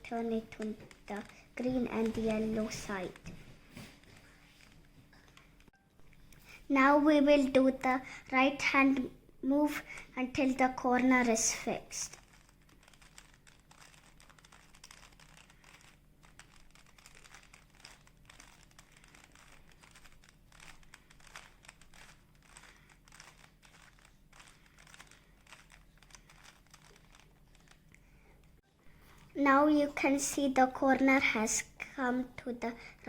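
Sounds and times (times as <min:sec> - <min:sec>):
faint low hum: 0:00.0 - 0:33.0
plastic cube layers clicking: 0:00.1 - 0:03.4, 0:12.0 - 0:28.0.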